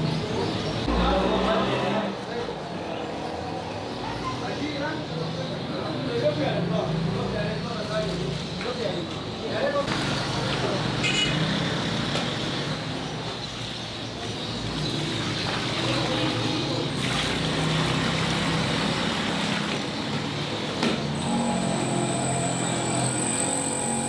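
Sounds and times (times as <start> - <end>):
motor vehicles passing: 0.0 - 24.0
thin high whine: 21.2 - 24.0.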